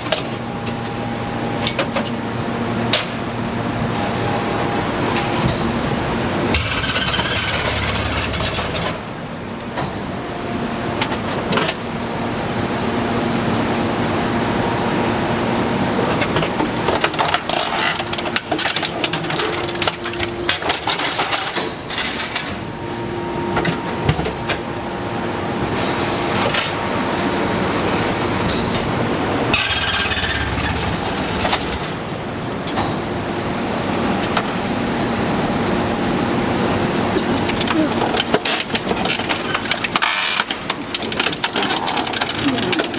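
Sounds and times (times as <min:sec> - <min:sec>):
hydraulic power unit humming: 0:00.0 - 0:42.9
scrap metal clanking: 0:29.5 - 0:32.0.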